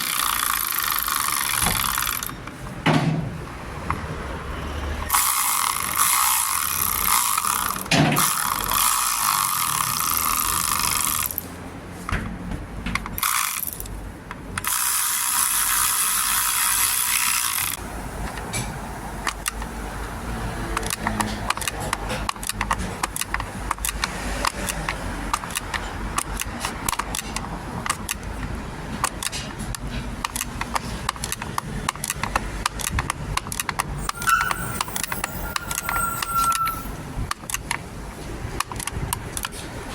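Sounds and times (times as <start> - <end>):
powered ratchet spinning: 0.0 - 2.5, 5.1 - 11.5, 13.2 - 14.0, 14.6 - 17.8
metallic clicking and ticking: 20.8 - 37.9.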